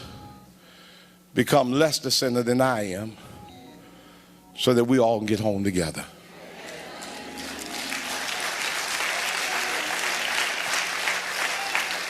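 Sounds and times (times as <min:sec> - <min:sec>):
congregation applauding: 0:06.6 - 0:12.0.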